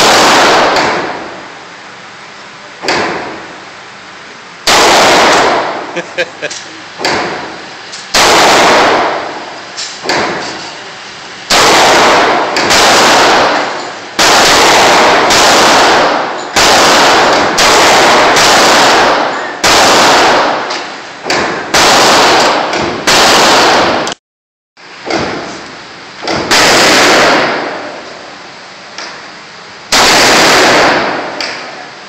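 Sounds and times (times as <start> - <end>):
revolver shots echoing: 11.5 - 24.2.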